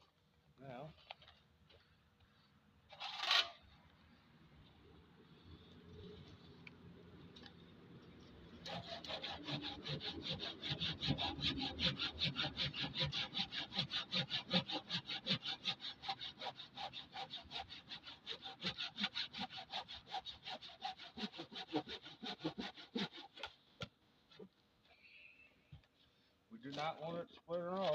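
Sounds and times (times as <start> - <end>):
hand saw cutting wood: 2.9 - 3.6, 8.6 - 24.4.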